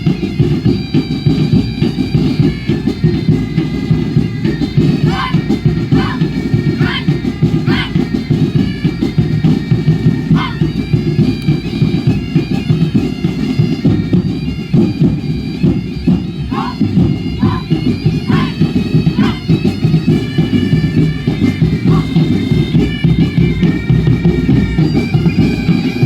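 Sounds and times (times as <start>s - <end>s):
loud dance music with reedy drone: 5.0s - 8.0s, 18.3s - 19.5s
falling-pitch cries or whistles: 5.0s - 8.1s, 10.3s - 10.8s, 16.5s - 19.6s, 21.9s - 22.4s.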